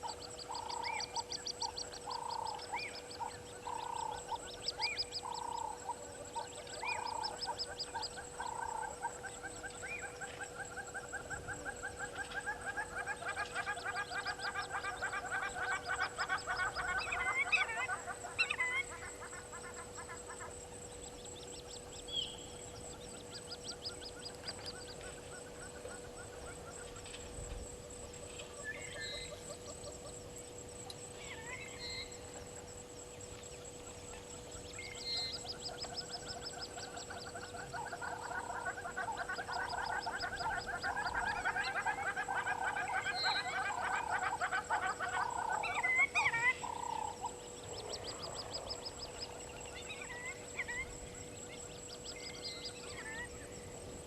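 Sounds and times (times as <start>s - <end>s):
birds chirping and trilling: 0.0s - 54.0s
chattering animal chorus: 36.2s - 50.0s.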